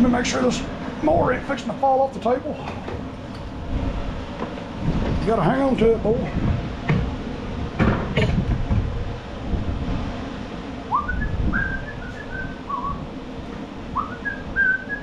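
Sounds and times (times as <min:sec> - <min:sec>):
person whistling a tune: 0:10.9 - 0:13.0, 0:14.0 - 0:15.0.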